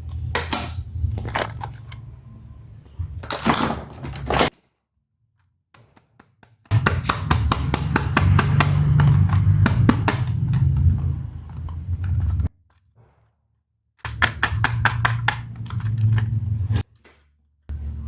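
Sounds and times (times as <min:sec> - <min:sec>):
steady low hum: 0:00.0 - 0:03.4, 0:06.7 - 0:12.5
plastic toy pieces clicking: 0:14.1 - 0:16.4.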